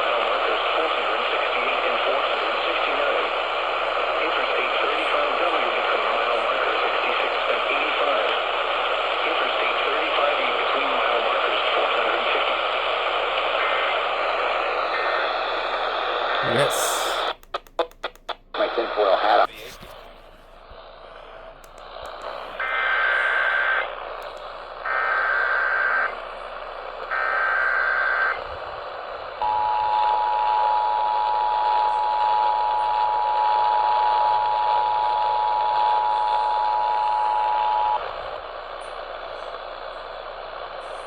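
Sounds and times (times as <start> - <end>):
radio static hiss: 0.0 - 41.0.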